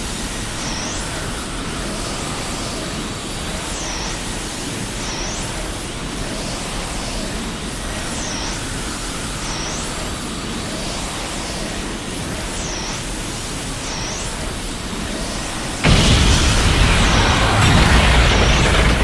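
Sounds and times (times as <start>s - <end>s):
steady rushing noise: 5.6s - 19.0s.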